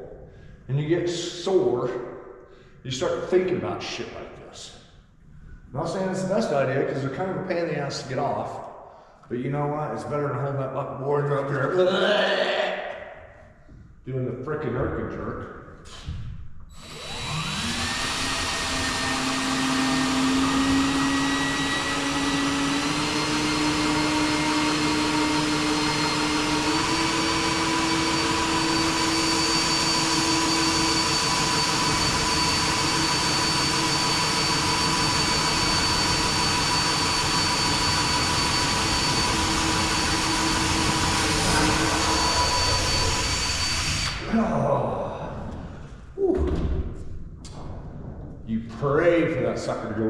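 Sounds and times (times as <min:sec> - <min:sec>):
electric motor whining: 0:16.8 - 0:44.3.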